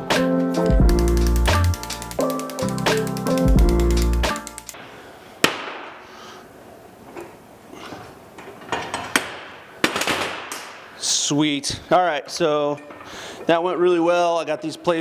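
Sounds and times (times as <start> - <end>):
background music: 0.0 - 4.8.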